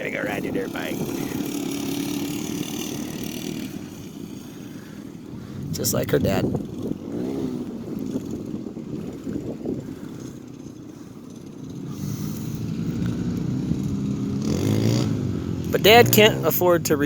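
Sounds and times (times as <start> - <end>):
dirt bike engine revving: 0.0 - 17.0.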